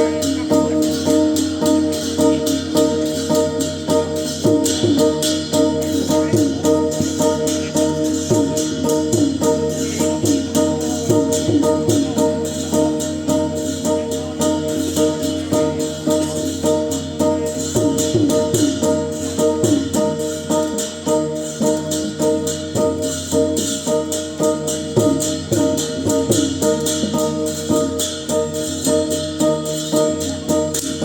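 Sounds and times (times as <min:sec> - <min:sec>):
fast cymbal and drum strokes: 0:00.0 - 0:31.0.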